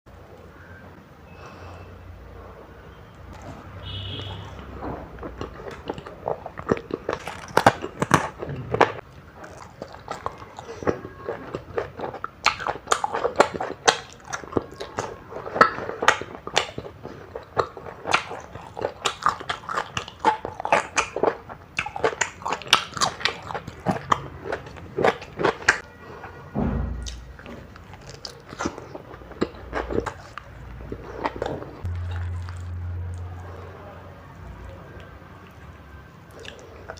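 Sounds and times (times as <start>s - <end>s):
crunchy bites and chewing: 3.3s - 25.9s, 27.0s - 33.7s
low thump: 26.6s - 27.1s.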